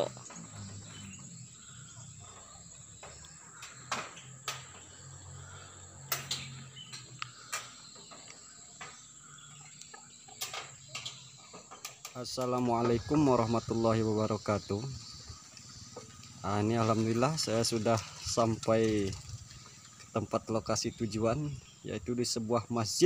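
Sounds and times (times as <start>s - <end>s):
sharp clicks and knocks: 3.0s - 5.0s, 6.1s - 9.0s.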